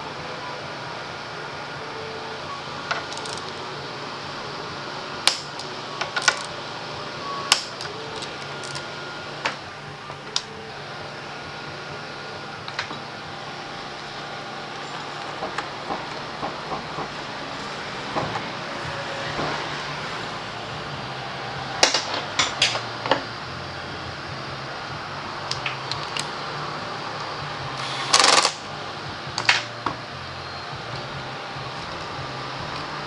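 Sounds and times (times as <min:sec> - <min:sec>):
fan hum: 0:00.0 - 0:33.0
metallic clinks of tools: 0:02.8 - 0:04.3, 0:05.2 - 0:06.7, 0:24.0 - 0:33.0.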